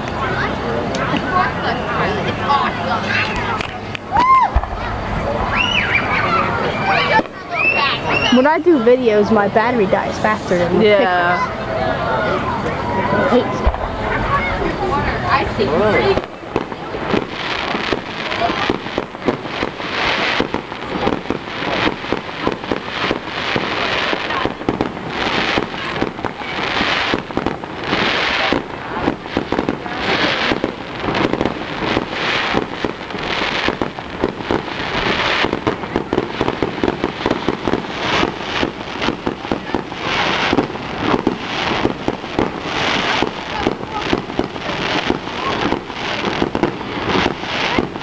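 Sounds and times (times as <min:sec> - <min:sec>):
firework crackling: 0:00.0 - 0:48.0
firework shell bursts: 0:16.0 - 0:48.0.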